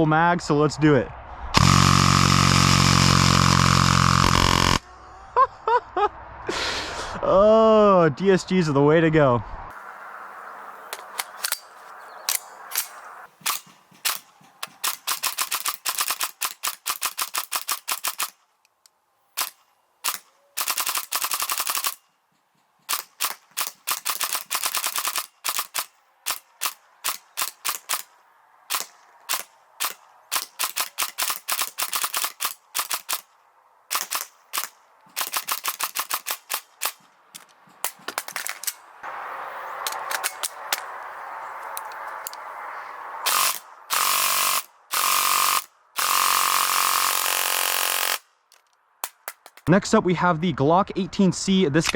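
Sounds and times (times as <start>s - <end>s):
airsoft rifle firing: 1.6s - 4.8s, 12.3s - 18.4s, 19.4s - 22.0s, 22.9s - 28.1s, 28.7s - 33.3s, 33.9s - 37.0s, 43.3s - 48.3s.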